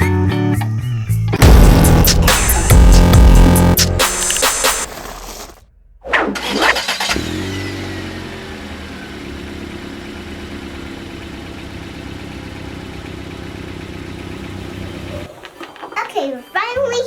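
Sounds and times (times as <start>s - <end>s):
car engine starting and running: 0.7s - 15.9s.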